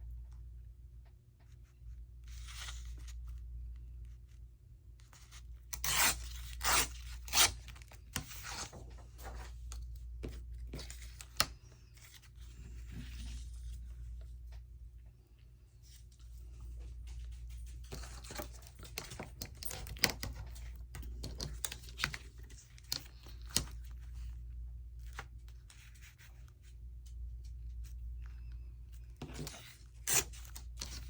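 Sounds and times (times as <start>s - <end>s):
paper rustling: 6.3s - 14.7s.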